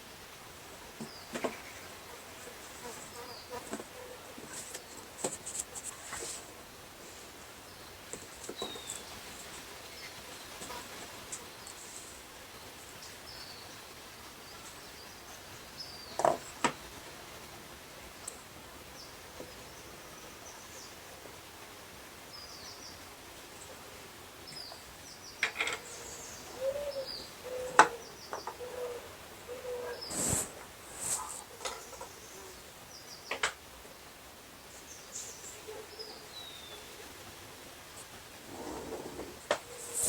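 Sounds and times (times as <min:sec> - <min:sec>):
background hiss: 0:00.0 - 0:40.0
small birds chirping: 0:07.6 - 0:16.9, 0:24.4 - 0:33.4, 0:34.7 - 0:37.1.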